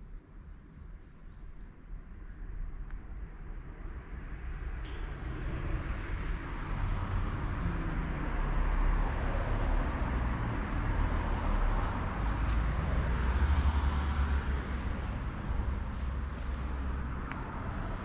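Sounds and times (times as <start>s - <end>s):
vehicle approaching: 5.3s - 18.0s.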